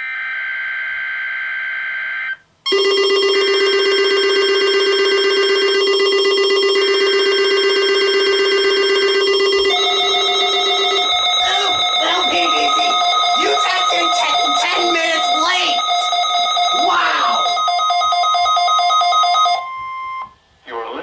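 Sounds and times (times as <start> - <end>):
buzzy alarm tone: 0.0 - 20.4
warbling data tone: 5.5 - 18.5.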